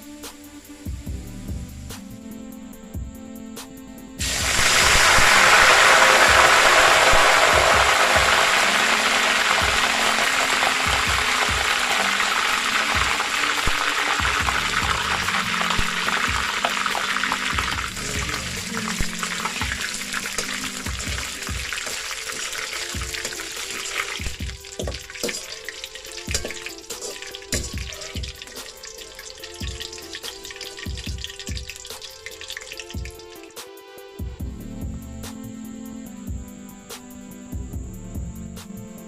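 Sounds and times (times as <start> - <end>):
background music: 0.0 - 39.0
fries sizzling in hot oil: 4.2 - 33.6.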